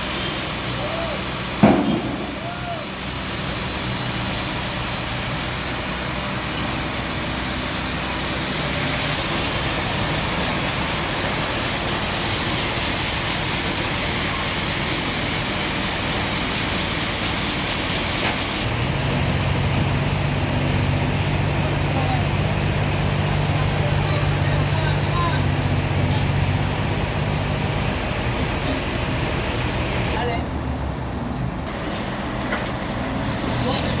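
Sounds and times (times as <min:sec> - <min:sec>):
heavy even hiss: 0:00.0 - 0:19.0
engine running: 0:00.0 - 0:34.0
low engine hum: 0:18.6 - 0:34.0.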